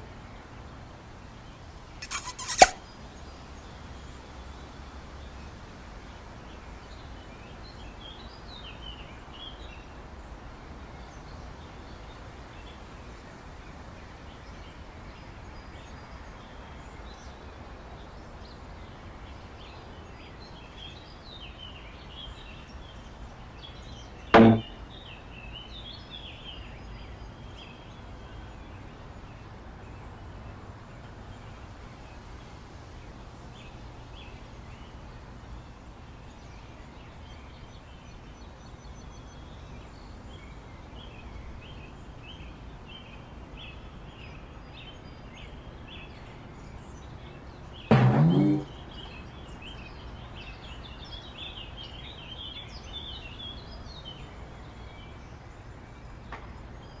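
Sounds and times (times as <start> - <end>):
sharp hit sound effect: 2.0 - 2.8, 47.9 - 48.7.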